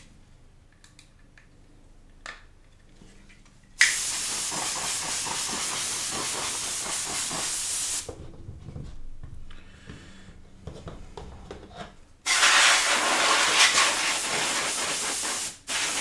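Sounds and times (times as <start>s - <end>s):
compressed air hissing: 3.8s - 8.1s, 12.3s - 16.0s.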